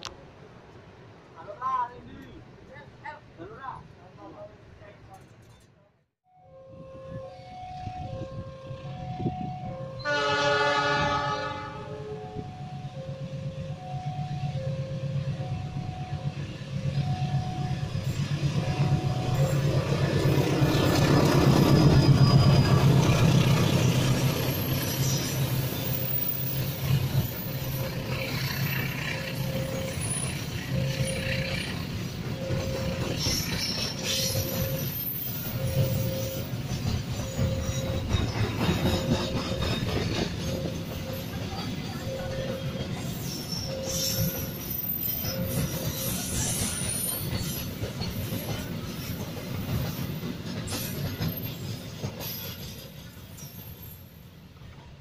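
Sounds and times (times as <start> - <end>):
train passing rumble: 6.6 - 55.0
electronic warning beeps: 29.2 - 46.7.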